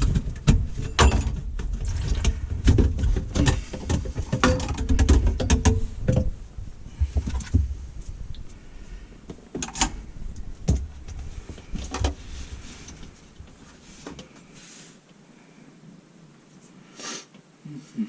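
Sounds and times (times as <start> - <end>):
tools knocking and clunking: 0.0 - 6.4.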